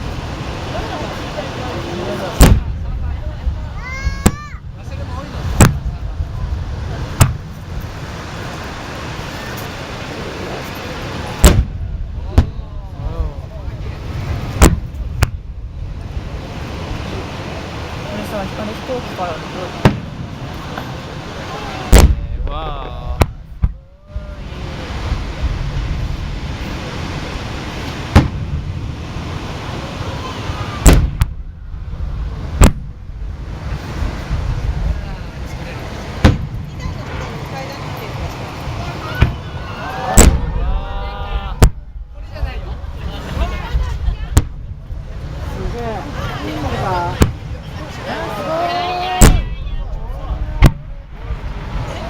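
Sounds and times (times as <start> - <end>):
crowd murmur: 0.0 - 52.0
steady wash of noise: 0.0 - 52.0
firework bang: 2.4 - 8.2, 11.2 - 16.7, 19.8 - 20.8, 21.9 - 27.2, 27.8 - 29.4, 30.2 - 35.1, 36.1 - 37.2, 39.0 - 42.6, 43.4 - 45.6, 47.1 - 47.7, 49.2 - 52.0.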